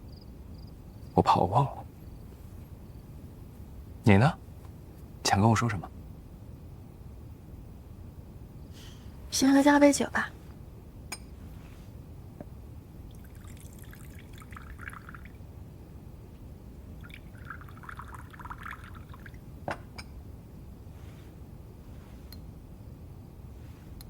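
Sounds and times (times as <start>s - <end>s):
liquor pouring into a cup: 13.1s - 15.4s, 17.0s - 19.4s.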